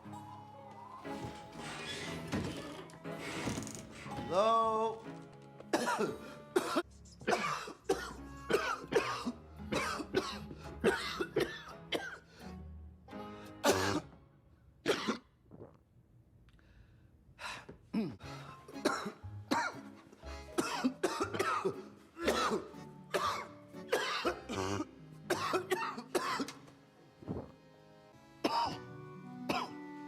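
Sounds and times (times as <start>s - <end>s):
background music: 0.0s - 15.1s, 18.0s - 30.0s
man coughing: 5.8s - 12.2s, 20.6s - 26.6s
throat clearing: 17.9s - 18.2s.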